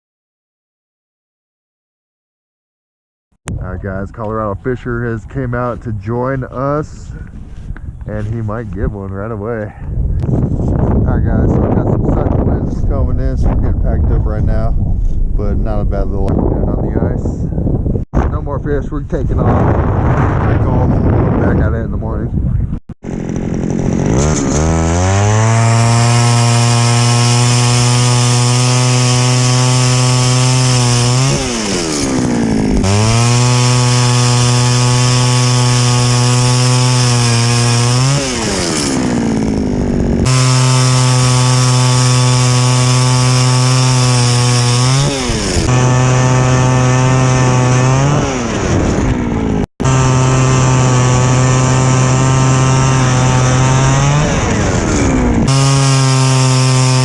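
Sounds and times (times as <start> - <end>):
small gasoline engine revving: 23.0 - 57.0.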